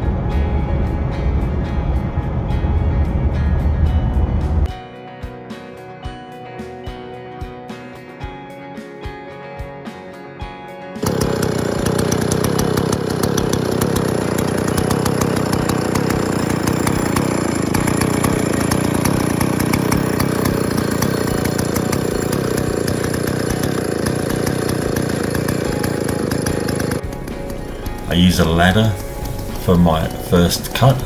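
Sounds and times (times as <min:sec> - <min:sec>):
chainsaw cutting log: 0:11.0 - 0:31.0.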